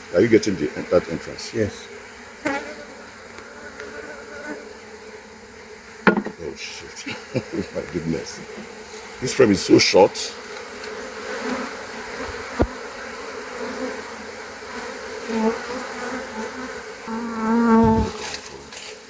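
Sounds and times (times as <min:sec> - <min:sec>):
bee buzzing close by: 0:00.0 - 0:19.0
bees buzzing in a swarm: 0:00.0 - 0:19.0
sharp knock: 0:06.1 - 0:06.4.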